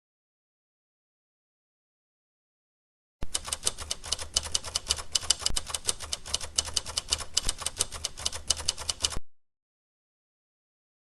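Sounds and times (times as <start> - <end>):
rapid keyboard typing: 3.2 - 9.2.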